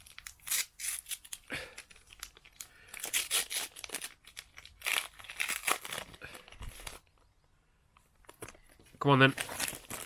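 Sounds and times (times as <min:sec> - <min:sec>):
plastic wrapper tearing and crinkling: 0:00.0 - 0:07.1, 0:09.2 - 0:10.0.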